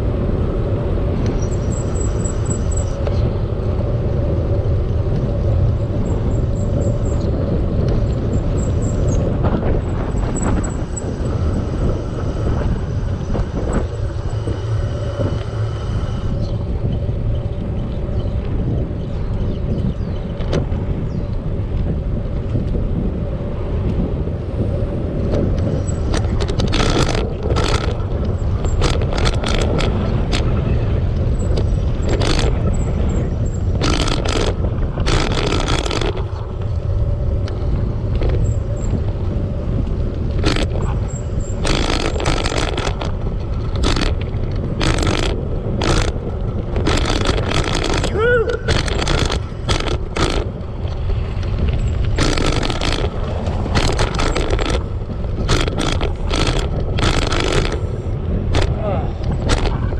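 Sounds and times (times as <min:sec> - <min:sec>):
wind buffeting microphone: 0:00.0 - 0:59.9
harsh noise bursts: 0:33.8 - 0:36.2, 0:41.6 - 0:43.1, 0:43.8 - 0:44.2, 0:44.8 - 0:46.2, 0:46.8 - 0:50.6, 0:52.2 - 0:59.8.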